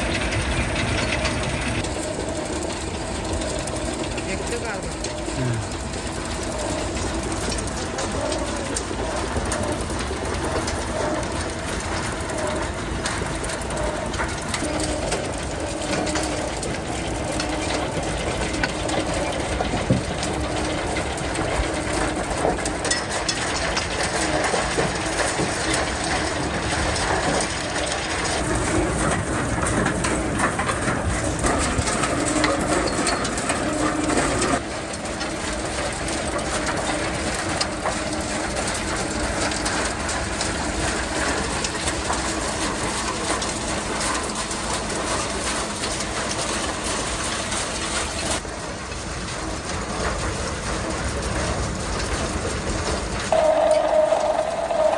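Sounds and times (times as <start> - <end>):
factory machinery din: 53.3 - 54.9
low hum: 53.3 - 54.9.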